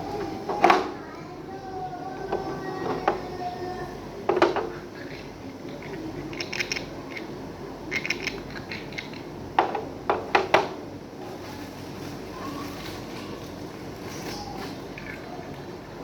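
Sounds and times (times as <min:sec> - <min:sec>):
hard plastic parts knocking: 0:04.3 - 0:04.8, 0:09.6 - 0:10.8.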